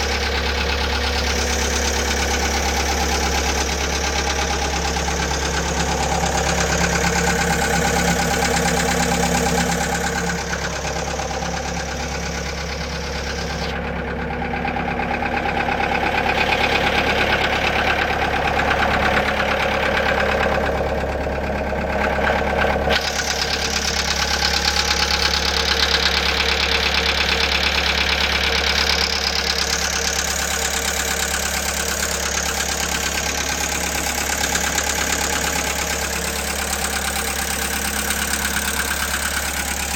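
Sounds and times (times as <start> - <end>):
skid steer engine running: 0.0 - 39.9.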